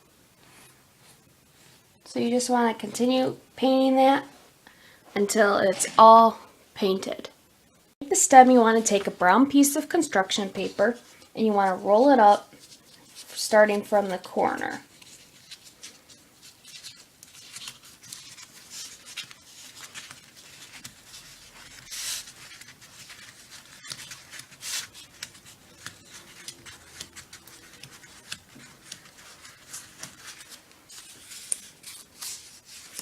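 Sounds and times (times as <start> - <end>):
paper rustling and crinkling: 12.5 - 13.4, 14.1 - 33.0.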